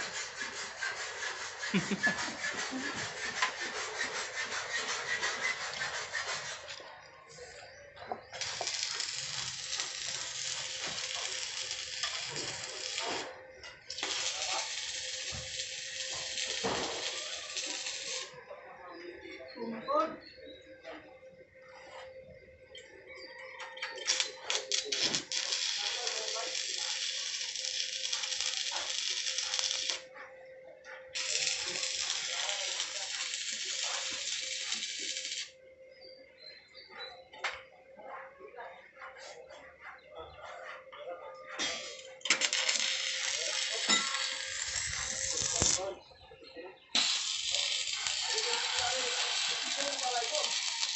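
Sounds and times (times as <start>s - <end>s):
welding arc crackling and hissing: 8.4s - 13.3s, 13.9s - 18.4s, 24.0s - 30.0s, 31.2s - 35.5s, 41.6s - 45.8s, 47.0s - 50.9s.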